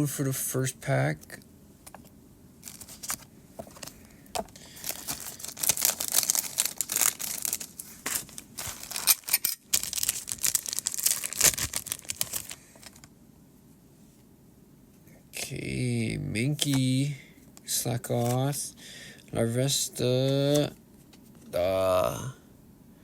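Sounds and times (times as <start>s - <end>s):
foil wrapper crinkling: 2.6s - 13.1s.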